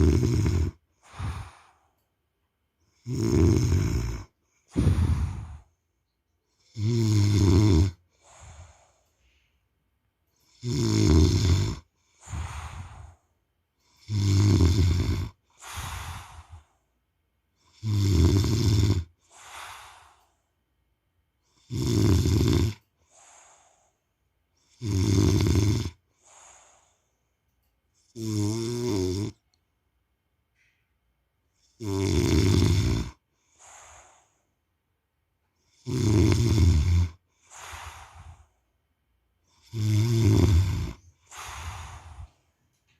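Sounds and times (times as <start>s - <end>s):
man snoring: 0.0s - 1.8s, 2.9s - 5.7s, 6.6s - 8.8s, 10.4s - 13.2s, 13.8s - 16.8s, 17.6s - 20.2s, 21.5s - 23.8s, 24.6s - 26.9s, 28.0s - 29.4s, 31.6s - 34.3s, 35.6s - 38.5s, 39.5s - 42.4s
quiet breath: 0.0s - 3.1s, 3.7s - 6.7s, 7.9s - 10.6s, 11.4s - 17.8s, 18.7s - 21.7s, 22.6s - 24.8s, 25.6s - 28.2s, 30.5s - 31.8s, 32.7s - 35.7s, 37.0s - 42.9s.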